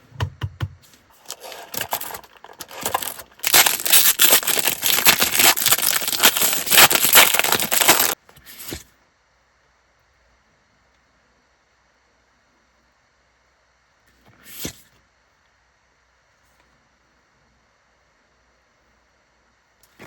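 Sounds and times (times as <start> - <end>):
plastic wrapper crinkling and tearing: 1.2 - 8.2.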